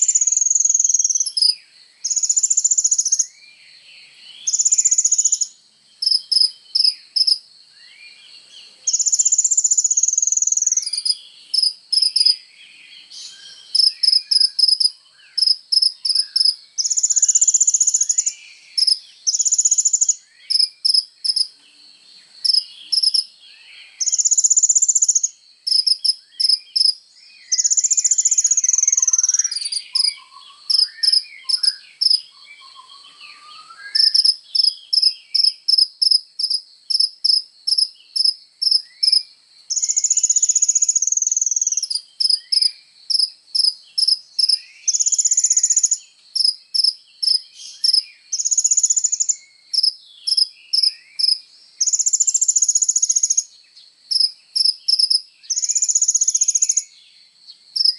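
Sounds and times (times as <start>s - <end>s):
soft bird twittering: 0.0s - 36.2s, 37.7s - 57.9s
bird singing high-pitched song: 0.0s - 57.9s.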